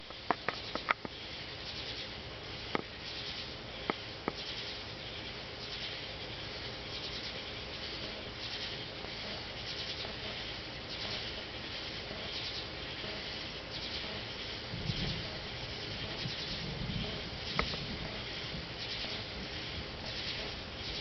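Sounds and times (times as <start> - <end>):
insects chirping: 0.0 - 21.0.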